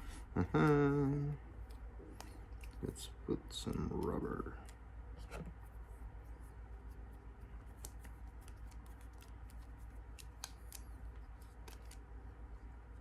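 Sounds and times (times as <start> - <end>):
steady low hum: 0.0 - 13.0
light clicks and snips: 7.7 - 12.0.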